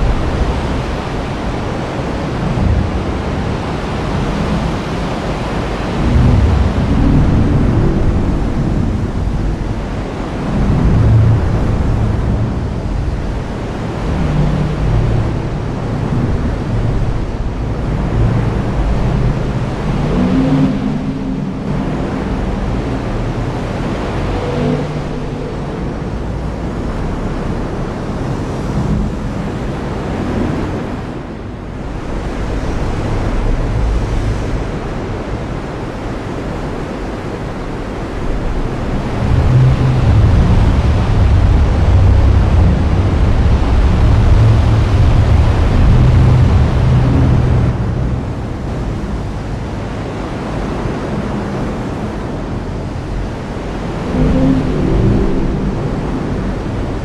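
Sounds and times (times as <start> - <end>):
thunder rumbling: 0.0 - 27.2, 37.7 - 49.5, 50.5 - 57.0
heavy rain: 0.0 - 57.0.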